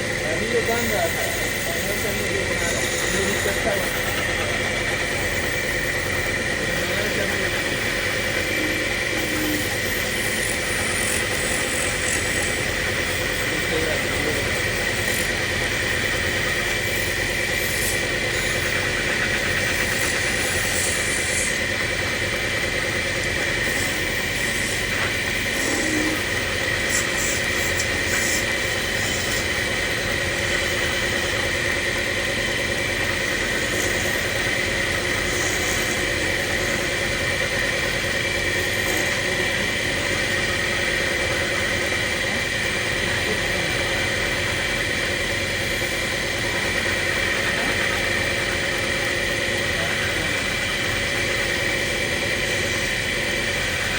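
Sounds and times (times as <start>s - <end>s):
woodturning lathe running: 0.0s - 53.9s.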